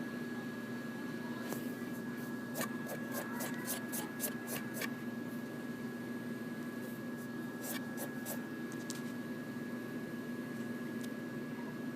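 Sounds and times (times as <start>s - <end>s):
cutter scratching rubber: 2.5s - 4.9s, 7.6s - 8.4s.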